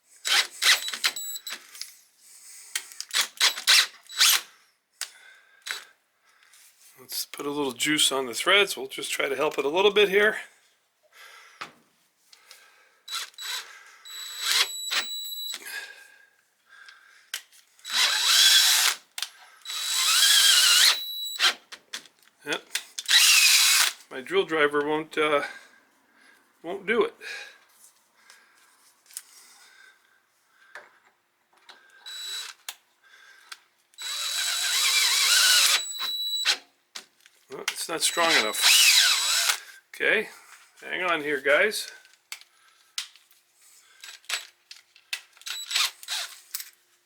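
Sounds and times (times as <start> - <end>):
cordless drill motor bogging: 0.3 - 1.5, 13.1 - 15.6, 17.8 - 19.0, 19.7 - 21.6, 23.1 - 23.9, 32.1 - 32.6, 34.0 - 36.6, 38.0 - 39.6, 45.4 - 46.4.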